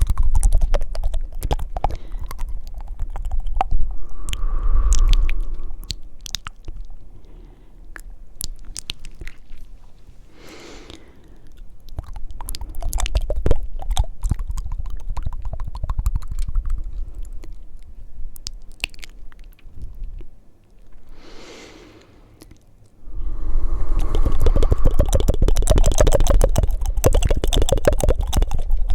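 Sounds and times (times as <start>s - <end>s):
wet tongue clicks and flutters: 0.0s - 7.1s, 7.9s - 9.7s, 10.8s - 21.0s, 22.4s - 28.9s
breathy puff: 10.4s - 11.3s, 21.2s - 22.4s.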